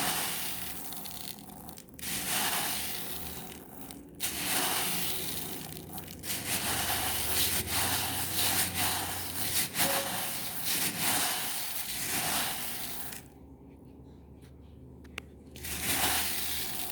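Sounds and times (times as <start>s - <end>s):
beads moving grainy hiss: 0.0s - 13.4s, 15.6s - 16.9s.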